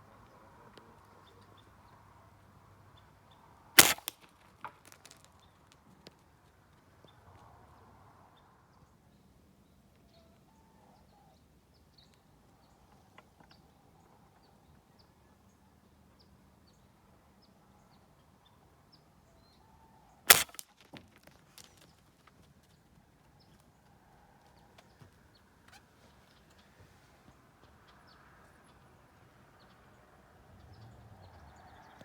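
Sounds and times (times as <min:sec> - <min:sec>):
dart rifle firing: 0:03.8 - 0:04.2, 0:20.3 - 0:20.6.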